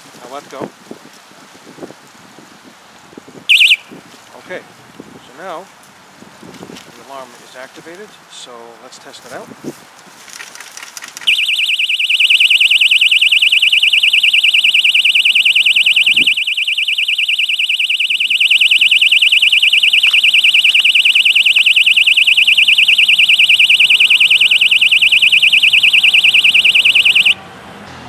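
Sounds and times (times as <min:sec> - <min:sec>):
bicycle alarm warbling tone: 0:03.5 - 0:03.9, 0:11.3 - 0:27.4.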